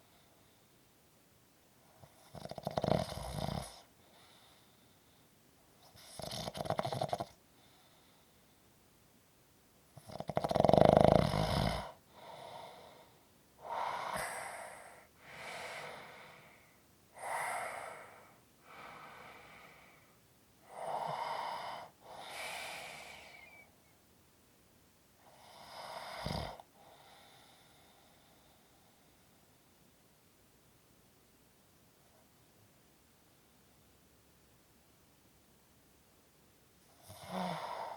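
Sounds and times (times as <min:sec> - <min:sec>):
person snoring: 0:10.0 - 0:13.0, 0:13.6 - 0:16.6, 0:20.7 - 0:23.6, 0:25.3 - 0:27.8, 0:37.0 - 0:37.9
heavy breathing: 0:12.1 - 0:23.7.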